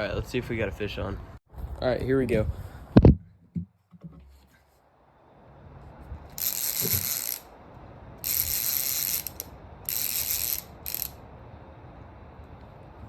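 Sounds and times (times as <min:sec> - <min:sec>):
fishing reel clicking whir: 0:06.3 - 0:07.5, 0:08.2 - 0:11.2.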